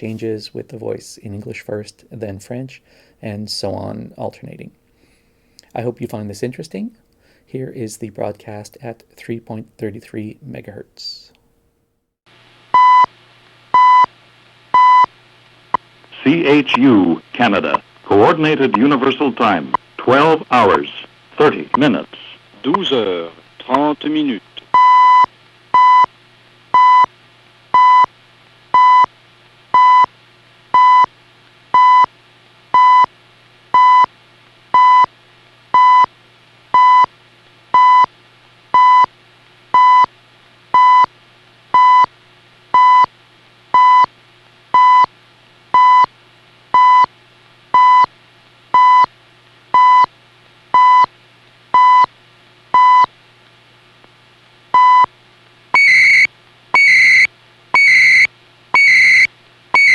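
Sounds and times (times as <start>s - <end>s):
faint low hum: 0.0s - 59.9s
time signal beeps on radio: 12.8s - 13.1s, 13.8s - 14.1s, 14.8s - 15.1s, 24.8s - 26.1s, 27.8s - 28.1s, 28.8s - 29.1s, 29.8s - 30.1s, 30.8s - 31.1s, 31.8s - 32.1s, 32.8s - 33.1s, 33.8s - 34.1s, 34.8s - 35.1s, 35.8s - 36.1s, 36.8s - 37.1s, 37.8s - 38.1s, 38.8s - 39.1s, 39.8s - 40.1s, 40.8s - 41.1s, 41.8s - 42.1s, 42.8s - 43.1s, 43.8s - 44.1s, 44.8s - 45.1s, 45.8s - 46.1s, 46.8s - 47.1s, 47.8s - 48.1s, 48.8s - 49.1s, 49.8s - 50.1s, 51.8s - 52.1s, 52.8s - 53.1s, 54.8s - 55.1s, 55.8s - 59.9s.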